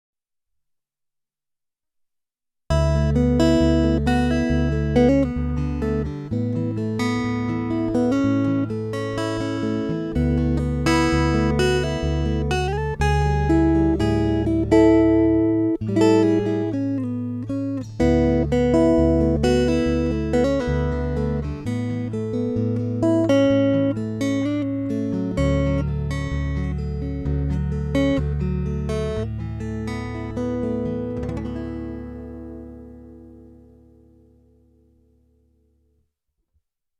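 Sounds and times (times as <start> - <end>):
acoustic guitar picking: 2.7 - 34.6.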